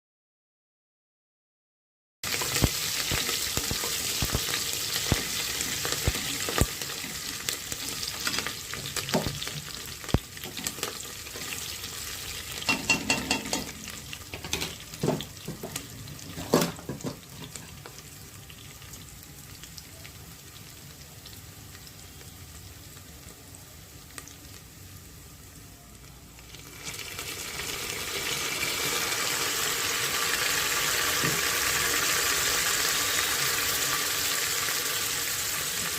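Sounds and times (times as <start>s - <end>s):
food sizzling in a pan: 2.2s - 35.9s.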